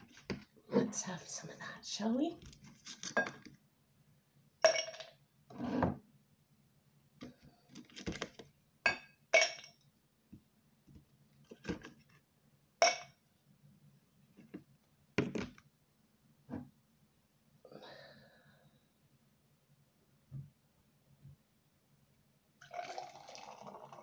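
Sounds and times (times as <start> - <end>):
glassware and utensil clinking: 4.7 - 5.2, 8.9 - 9.8, 12.8 - 13.2.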